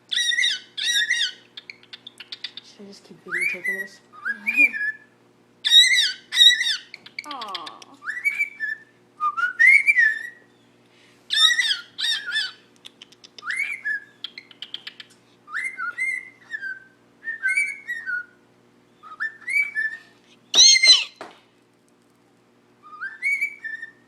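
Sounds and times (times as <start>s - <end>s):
cockatiel whistling: 0.1s - 2.6s, 5.7s - 7.0s, 8.0s - 10.4s, 11.3s - 12.6s, 13.4s - 18.4s, 19.0s - 21.2s, 22.8s - 24.0s.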